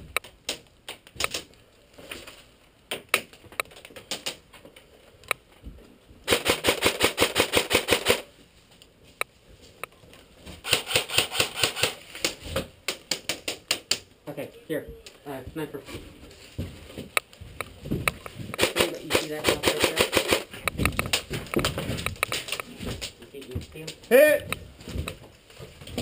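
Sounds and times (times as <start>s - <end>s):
airsoft rifle full-auto bursts: 6.3s - 8.3s, 10.6s - 12.0s, 18.6s - 20.5s
single airsoft shots: 10.6s - 12.0s.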